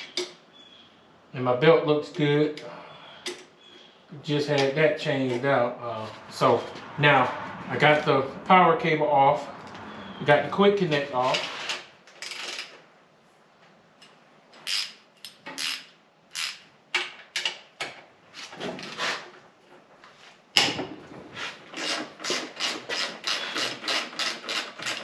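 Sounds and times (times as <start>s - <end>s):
metallic clicks and scrapes: 21.4s - 25.0s
wrench rasping strokes: 21.8s - 25.0s.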